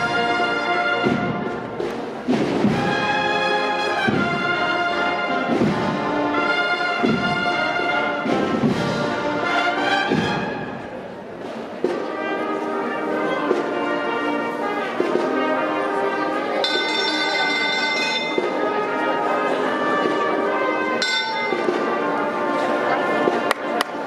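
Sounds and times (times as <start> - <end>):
band playing slow chords: 0.0 - 24.0
bright ringing high notes: 16.6 - 18.6, 21.0 - 21.9.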